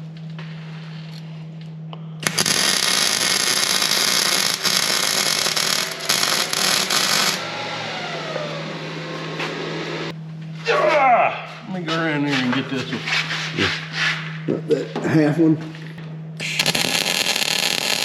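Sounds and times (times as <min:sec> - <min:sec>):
faint falling whine: 0:00.0 - 0:10.7
steady low hum: 0:00.0 - 0:18.0
crackling welding hiss: 0:02.2 - 0:07.5, 0:16.4 - 0:18.0.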